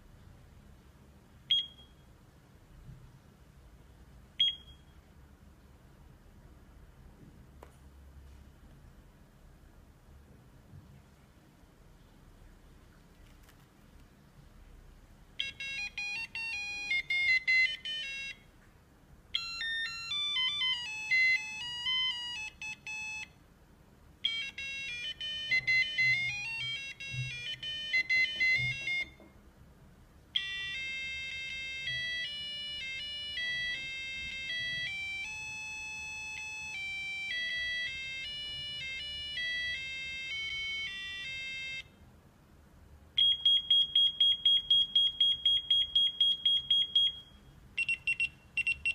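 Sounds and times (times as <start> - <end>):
electronic alarm clock melodies: 15.4 - 18.5, 19.4 - 23.4, 24.2 - 29.3, 30.4 - 41.9, 43.2 - 48.9
fast single-tone alarm beep: 43.2 - 48.9.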